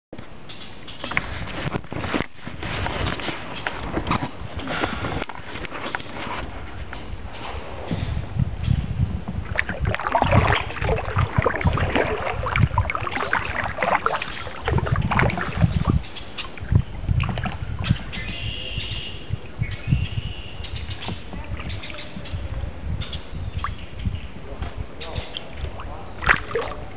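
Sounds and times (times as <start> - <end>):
paddle splashing in water: 9.2 - 18.2, 24.6 - 26.9.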